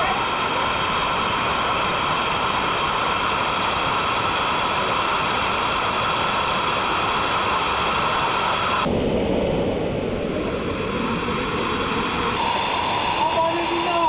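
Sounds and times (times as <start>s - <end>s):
waterfall rushing: 0.0s - 8.8s.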